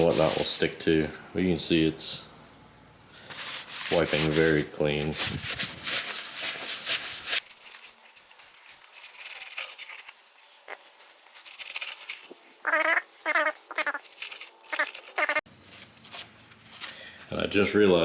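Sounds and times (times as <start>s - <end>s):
rag wiping metal: 3.3s - 7.3s.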